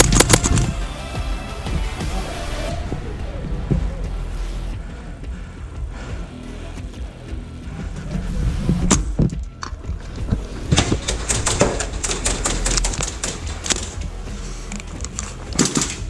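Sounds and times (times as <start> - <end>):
airsoft gunfire: 0.0 - 0.8, 10.7 - 14.0, 15.5 - 16.0.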